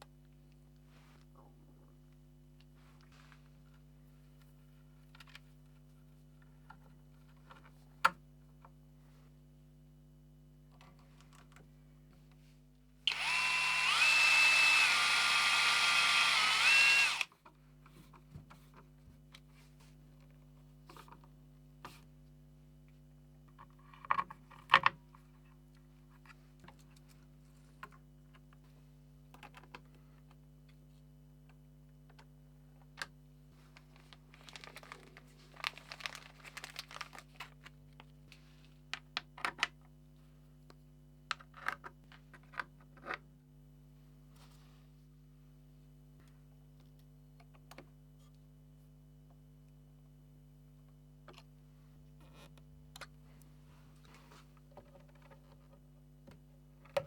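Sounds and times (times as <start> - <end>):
power drill motor whine: 13.1 - 17.3.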